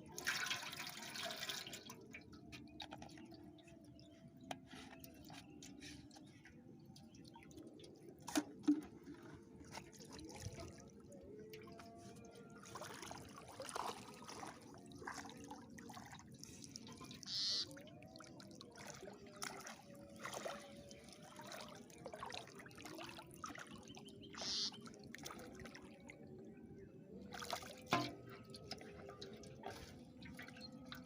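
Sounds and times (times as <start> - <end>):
water dripping and splashing: 0.2 - 6.2, 12.7 - 25.9, 27.3 - 31.0.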